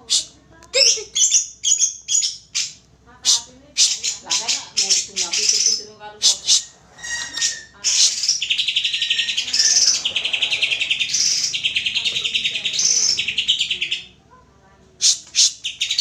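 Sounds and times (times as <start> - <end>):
sharp bird calls: 0.0 - 14.2, 15.0 - 16.0
bird singing rattling trill: 0.8 - 2.8, 3.8 - 14.1.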